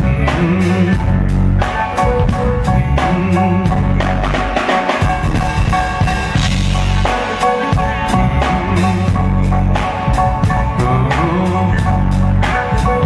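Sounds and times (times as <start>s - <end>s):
bass drum and snare beat: 0.0s - 13.0s
bass guitar: 0.0s - 13.0s
guitar: 0.0s - 13.0s.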